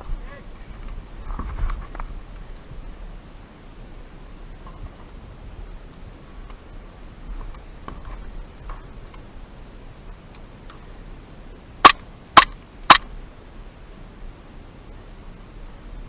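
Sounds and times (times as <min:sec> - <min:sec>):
airsoft gun shots: 0:11.8 - 0:13.1.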